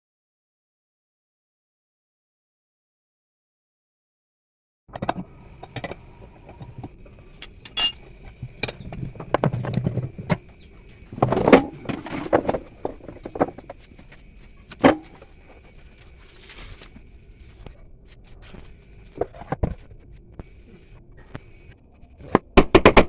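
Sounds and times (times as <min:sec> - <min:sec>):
scraping handling noise: 0:07.3 - 0:08.0
metal tools clinking: 0:07.4 - 0:08.0.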